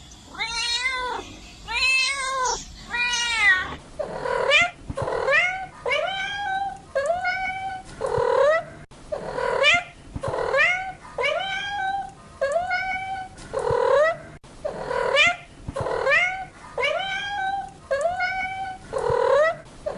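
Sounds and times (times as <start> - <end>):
cat meowing: 0.3 - 3.8.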